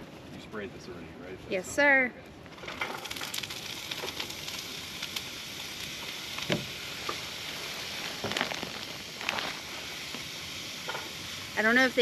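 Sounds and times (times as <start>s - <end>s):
vegetables sizzling in oil: 2.7s - 12.0s.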